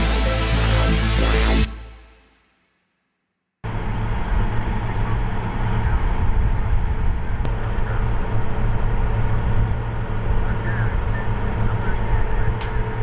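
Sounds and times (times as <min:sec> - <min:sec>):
heavy vehicle engine rumble: 0:03.7 - 0:13.0.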